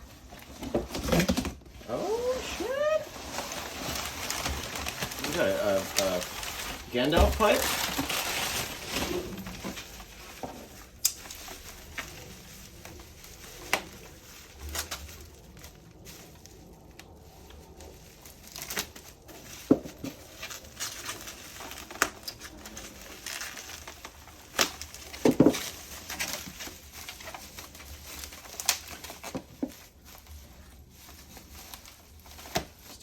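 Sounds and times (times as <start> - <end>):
packing material rustling: 0.0 - 33.0
cardboard box knocks and thumps: 25.2 - 25.7.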